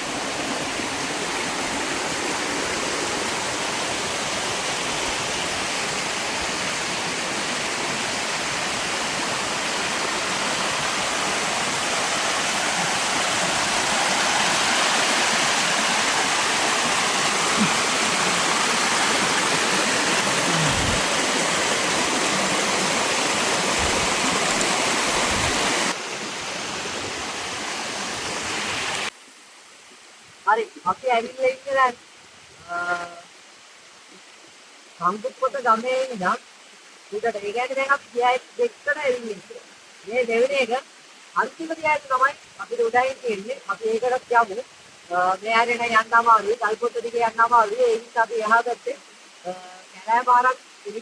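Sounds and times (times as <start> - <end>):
waterfall rushing: 0.0 - 29.2.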